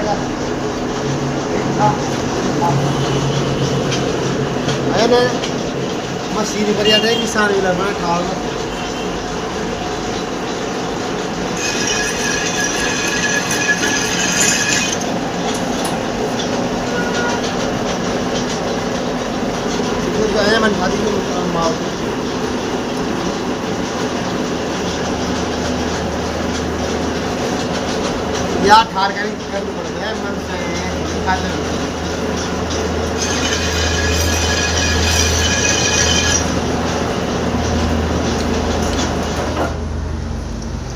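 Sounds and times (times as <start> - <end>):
metal lathe humming: 0.0 - 39.8
high-pitched metallic squeal: 11.5 - 15.2, 16.8 - 17.7, 33.0 - 37.1.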